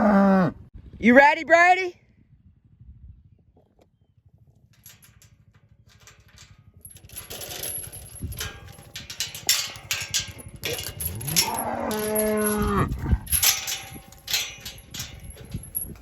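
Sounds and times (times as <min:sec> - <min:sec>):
metallic clicks and rattling: 0:04.8 - 0:16.0.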